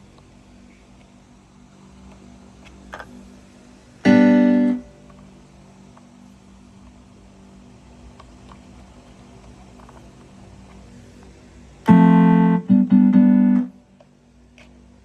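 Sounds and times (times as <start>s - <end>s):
low steady background hum: 0.0s - 15.0s
bright synth note: 11.9s - 13.7s.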